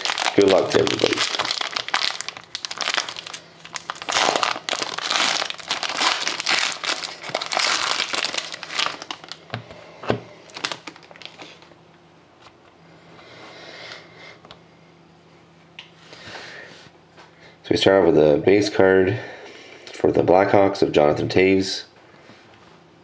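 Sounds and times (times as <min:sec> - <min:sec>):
card pack wrapper crinkling: 0:00.0 - 0:09.6, 0:10.4 - 0:11.7.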